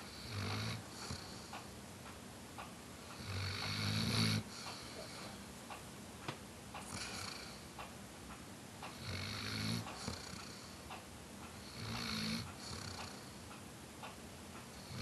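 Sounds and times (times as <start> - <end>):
dog snoring: 0.0 - 1.5, 3.1 - 5.4, 6.8 - 7.6, 8.9 - 10.8, 11.6 - 13.4, 14.8 - 15.0.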